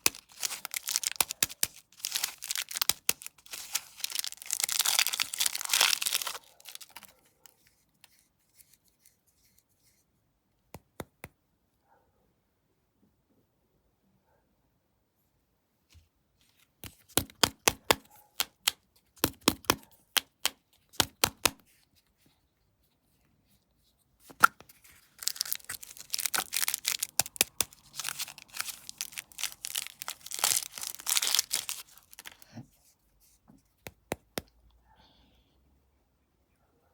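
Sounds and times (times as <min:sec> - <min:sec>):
packaging snapping: 0:00.0 - 0:07.1, 0:24.3 - 0:32.4
snack packaging clicks and crackles: 0:00.0 - 0:07.2, 0:24.3 - 0:32.5
wrapper tearing and crinkling: 0:00.0 - 0:07.2, 0:24.4 - 0:32.5.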